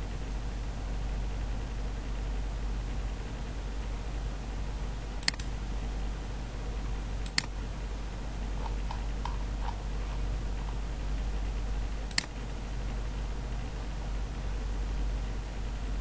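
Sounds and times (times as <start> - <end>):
low electrical hum: 0.0 - 16.0
computer mouse clicking: 5.2 - 5.5, 7.2 - 7.6, 8.6 - 10.8, 12.1 - 12.4.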